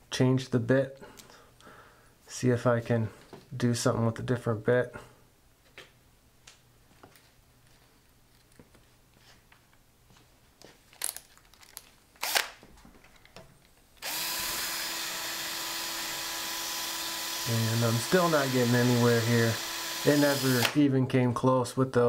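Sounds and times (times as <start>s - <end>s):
electric drill drilling into lock: 12.2s - 12.5s, 14.0s - 20.8s.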